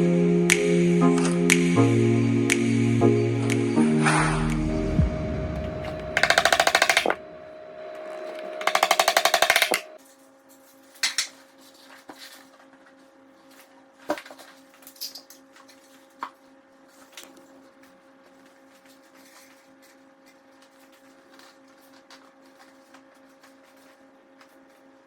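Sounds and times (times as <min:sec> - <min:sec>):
rapid mechanical clicking: 0:06.2 - 0:07.2, 0:08.6 - 0:09.9.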